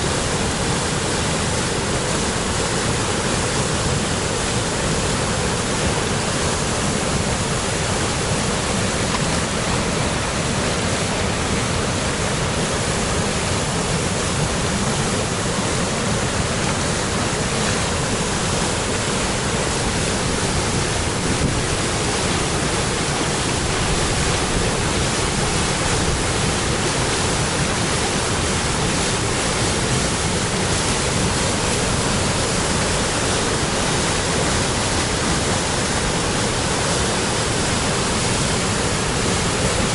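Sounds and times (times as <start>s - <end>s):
waterfall roaring: 0.0s - 39.9s.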